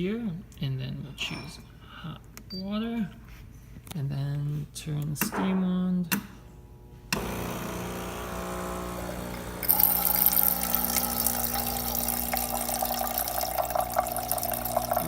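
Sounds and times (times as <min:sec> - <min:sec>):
pump humming: 0:07.2 - 0:15.0
hot water hissing from steam wand: 0:09.3 - 0:15.0.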